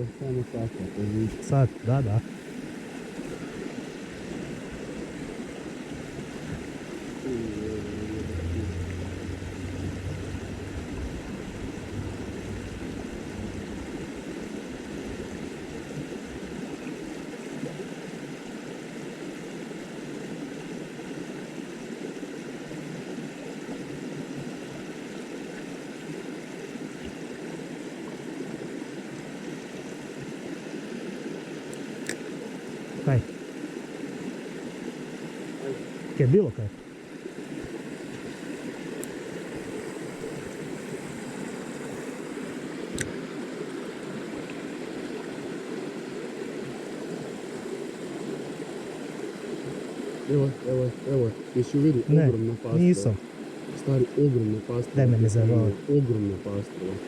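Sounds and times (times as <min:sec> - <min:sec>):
faint low hum: 0:00.0 - 0:17.4
stream water rushing: 0:00.0 - 0:57.0.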